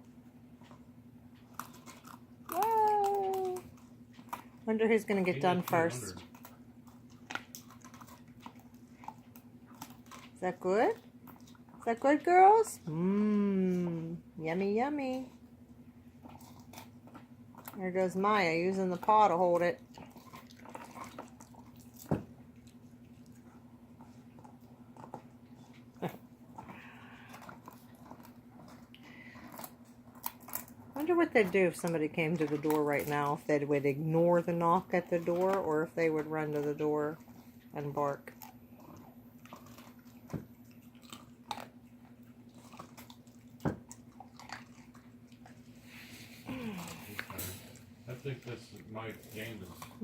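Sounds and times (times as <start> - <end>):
puppies gnawing on bones: 0.0 - 50.0
steady low hum: 0.0 - 50.0.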